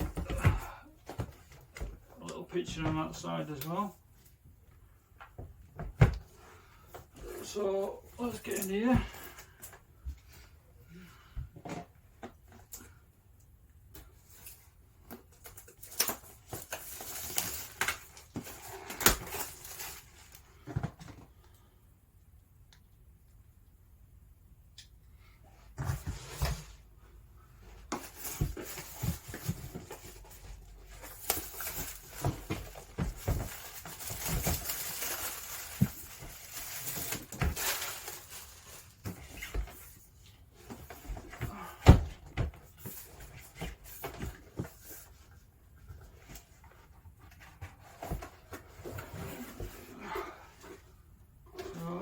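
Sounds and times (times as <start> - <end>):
cardboard packaging rustling: 14.2 - 21.2, 27.7 - 50.9.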